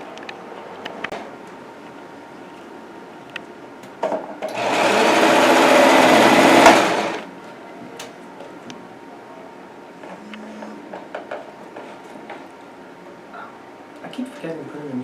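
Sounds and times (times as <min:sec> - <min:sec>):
sewing machine stitching: 0:04.5 - 0:07.3.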